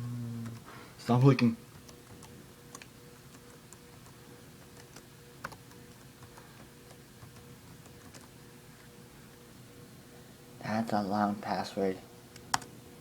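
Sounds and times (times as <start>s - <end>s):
laptop keyboard keystrokes: 1.8s - 8.4s, 12.3s - 12.7s.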